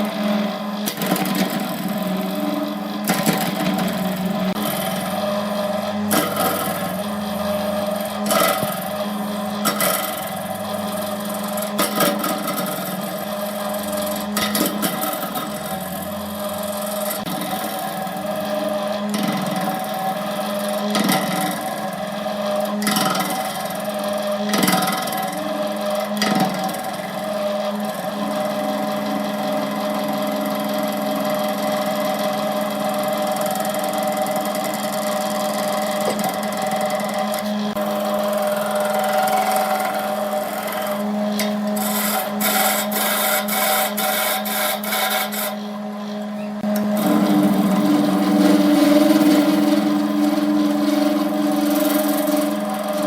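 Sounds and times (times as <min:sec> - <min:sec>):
tool scraping spinning wood: 0:00.0 - 0:53.0
wood lathe motor running: 0:00.0 - 0:53.0.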